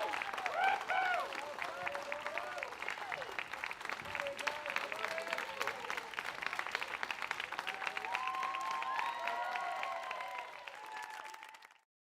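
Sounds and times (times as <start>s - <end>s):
crowd shouting and cheering: 0.0s - 11.8s
audience applauding: 0.0s - 11.9s.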